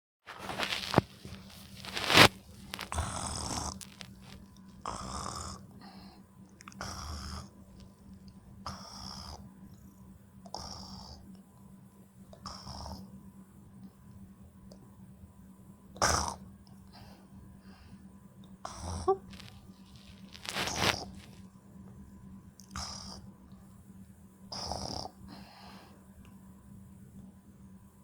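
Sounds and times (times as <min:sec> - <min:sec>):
person snoring: 0:01.9 - 0:04.0.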